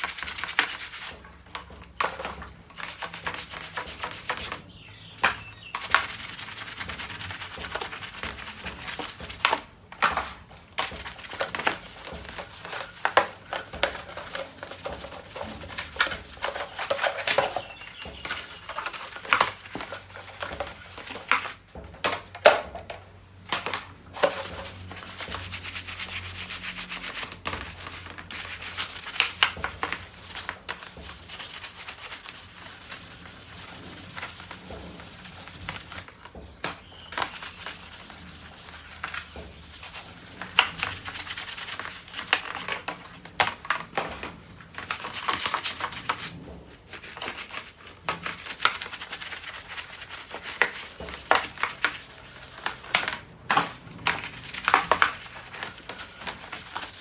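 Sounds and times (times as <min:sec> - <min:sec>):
scrubbing and rubbing strokes: 0:00.0 - 0:21.6, 0:24.1 - 0:43.3, 0:44.0 - 0:57.0.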